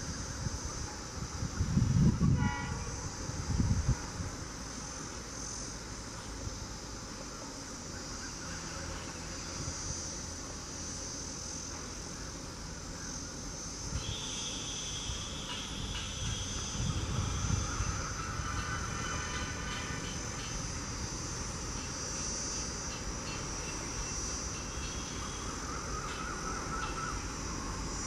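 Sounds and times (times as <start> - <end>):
insects chirring: 0.0 - 28.0
steady high whine: 0.0 - 28.0.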